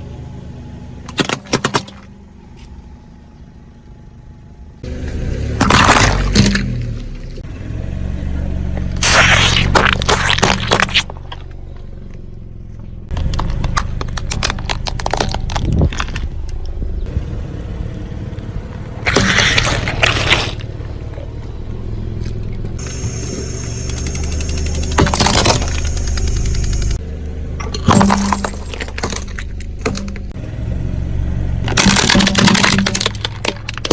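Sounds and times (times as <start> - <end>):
car engine idling: 2.1 - 33.9
tyre crushing brittle objects: 5.6 - 6.9, 8.9 - 11.5, 13.1 - 16.6, 19.0 - 20.7, 24.3 - 26.7, 27.6 - 30.4, 31.7 - 33.9.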